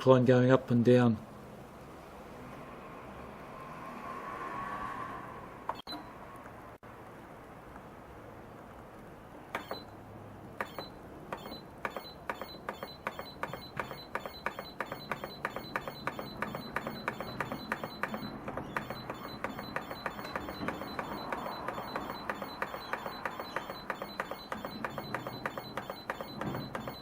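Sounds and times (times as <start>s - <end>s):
treadmill belt ticking: 10.6s - 27.0s
treadmill motor hum: 10.6s - 27.0s.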